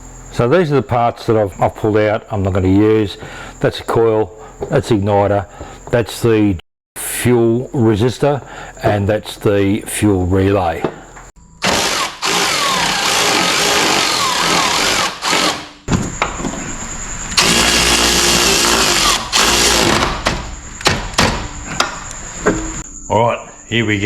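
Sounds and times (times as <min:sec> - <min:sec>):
power tool motor running: 0:11.6 - 0:15.9, 0:17.4 - 0:20.3.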